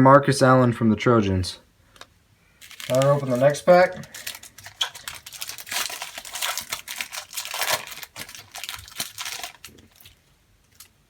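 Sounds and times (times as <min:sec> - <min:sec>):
wrapper tearing and crinkling: 0:02.6 - 0:11.0.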